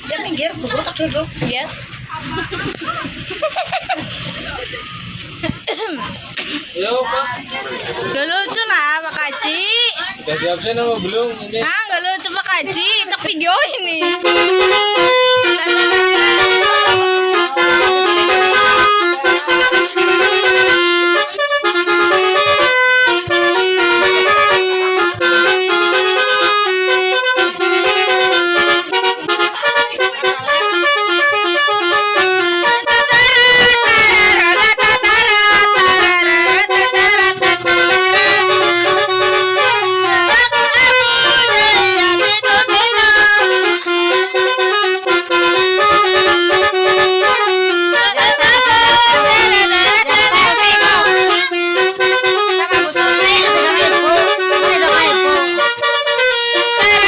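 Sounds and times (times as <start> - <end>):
musical vehicle horn tune: 12.7 - 57.0.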